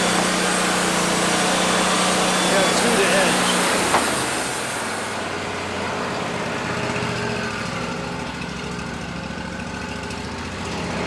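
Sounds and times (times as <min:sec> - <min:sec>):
sawmill engine running: 0:00.0 - 0:11.0.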